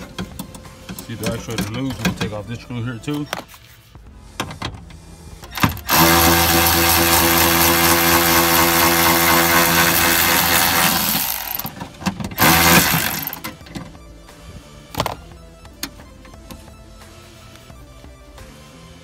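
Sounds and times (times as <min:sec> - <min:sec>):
cordless drill running: 0:05.6 - 0:11.8, 0:12.4 - 0:13.5.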